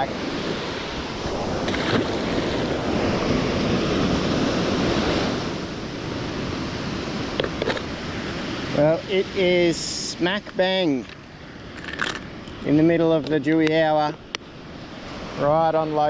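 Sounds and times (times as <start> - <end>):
wind on microphone: 0.0 - 8.9
ocean surf washing onto beach: 0.0 - 16.0.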